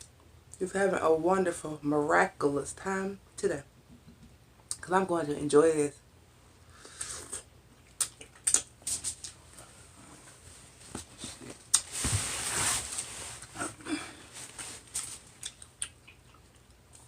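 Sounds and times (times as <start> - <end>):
slurp: 6.9 - 7.5
chewing with wet smacking: 7.8 - 8.7, 15.4 - 17.0.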